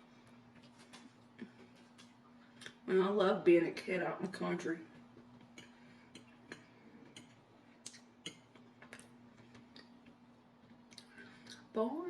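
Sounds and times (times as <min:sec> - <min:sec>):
faint low hum: 0:00.0 - 0:12.0
person chewing: 0:05.1 - 0:11.6.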